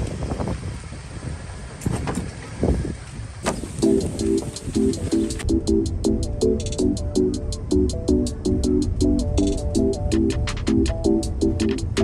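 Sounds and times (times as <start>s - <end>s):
electronic pop music: 3.7s - 12.0s.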